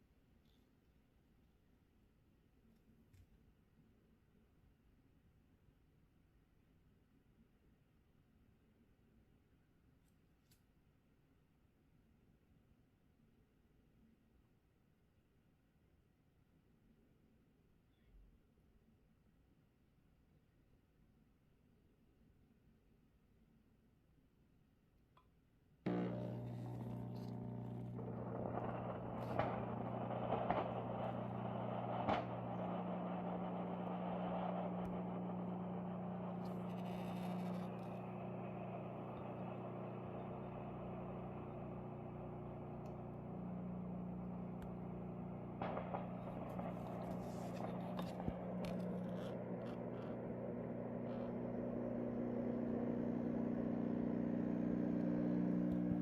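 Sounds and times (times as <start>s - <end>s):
steam mop buzzing and hissing: 25.9s - 56.0s.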